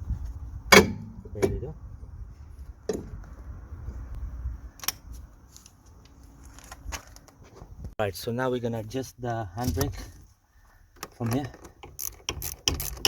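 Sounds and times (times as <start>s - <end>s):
rumble of tools being moved: 0.0s - 7.9s, 9.6s - 13.0s
sharp metallic knocks: 0.7s - 1.7s.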